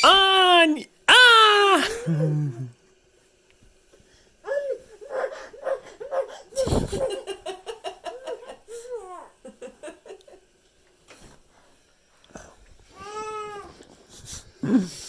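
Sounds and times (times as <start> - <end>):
baby giggling: 4.5 - 9.4.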